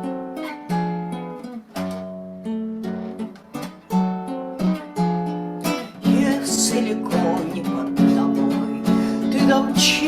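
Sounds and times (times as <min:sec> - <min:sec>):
acoustic guitar strumming: 0:00.0 - 0:10.0
person singing: 0:06.0 - 0:10.0.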